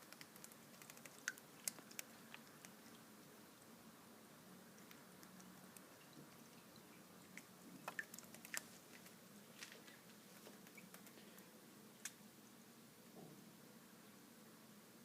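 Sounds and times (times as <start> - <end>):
low steady hum: 0.0 - 15.0
bird splashing in water: 7.4 - 9.2.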